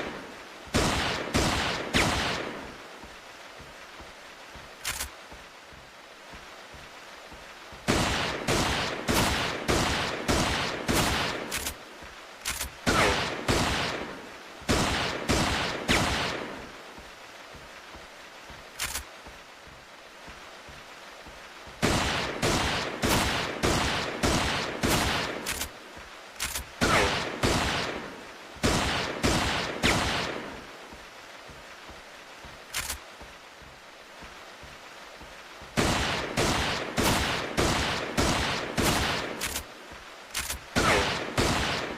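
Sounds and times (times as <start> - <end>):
revolver gunshots: 14.7 - 16.6, 26.4 - 30.6, 40.4 - 41.9.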